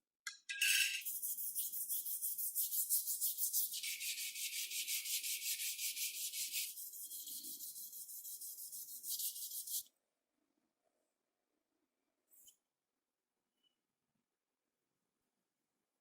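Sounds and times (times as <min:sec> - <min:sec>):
scratchy rubbing strokes: 0:01.0 - 0:09.9.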